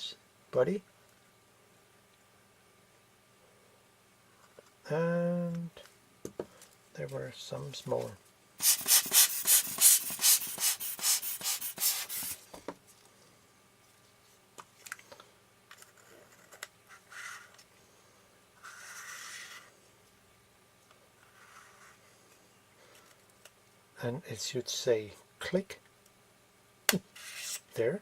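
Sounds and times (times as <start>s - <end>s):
hand rubbing on a lens: 8.6s - 12.4s
short hiss-like sounds: 8.6s - 12.4s
faint small scrapes and ticks: 13.9s - 17.7s.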